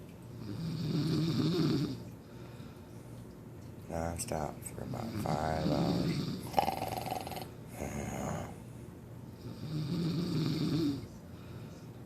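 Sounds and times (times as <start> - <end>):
soft breath: 2.2 - 3.1, 11.0 - 12.0
woman snoring heavily: 5.8 - 7.5, 9.6 - 11.0.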